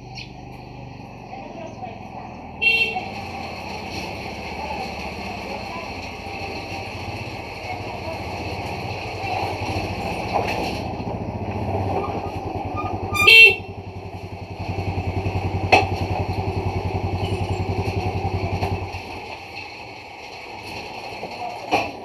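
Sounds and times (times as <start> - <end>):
motorcycle idling: 0.0 - 22.0
motorcycle horn honk: 2.6 - 3.9, 11.6 - 18.5.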